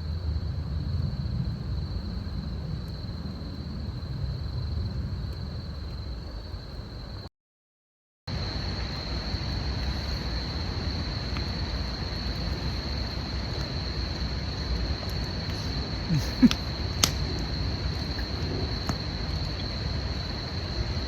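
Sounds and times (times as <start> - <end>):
low rumbling background: 0.0 - 7.2
insects trilling: 0.0 - 7.3, 8.3 - 21.0
sharp clicks: 16.2 - 17.4.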